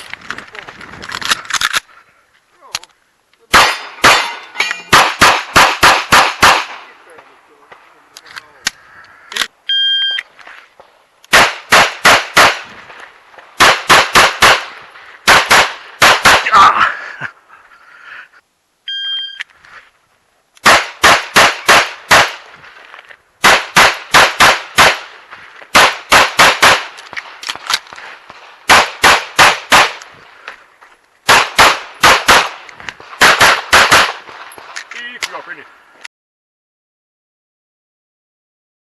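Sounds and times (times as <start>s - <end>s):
pistol shots: 3.5s - 6.9s, 11.3s - 12.7s, 13.6s - 16.5s, 20.6s - 22.5s, 23.4s - 30.1s, 31.2s - 34.8s
shot timer beep: 9.7s - 10.2s, 18.9s - 19.4s.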